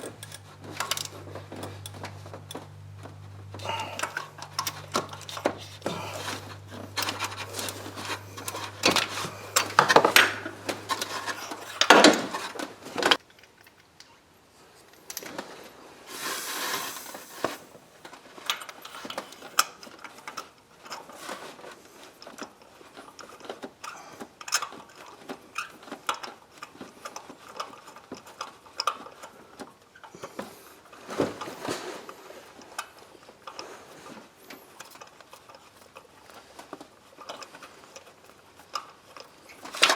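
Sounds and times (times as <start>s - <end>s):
metal tools clinking: 3.5s - 13.2s
short hiss: 16.1s - 17.7s.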